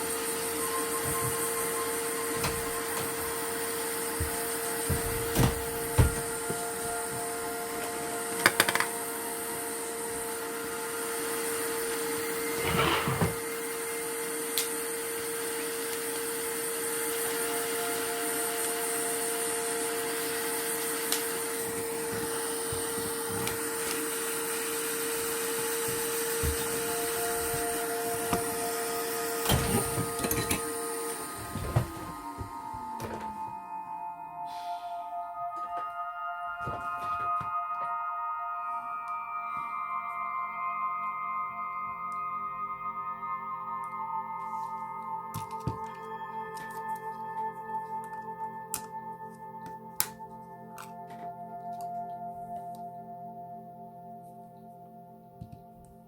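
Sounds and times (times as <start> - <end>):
electric blower motor humming: 0.0 - 33.7
hand tools clicking and tapping: 8.4 - 9.0.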